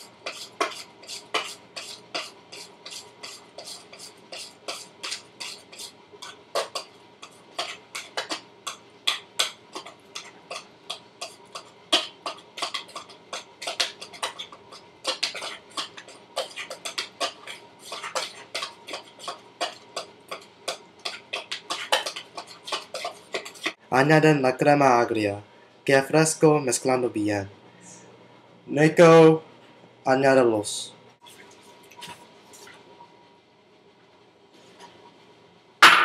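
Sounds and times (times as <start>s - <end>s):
utensil stirring batter in bowl: 0.0s - 23.8s.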